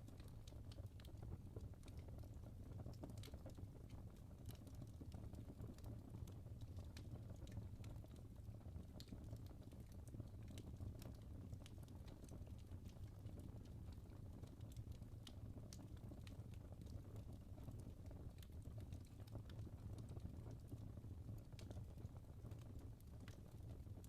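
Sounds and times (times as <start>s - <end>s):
fire crackling and popping: 0.0s - 24.0s
low rumble of flames: 0.0s - 24.0s.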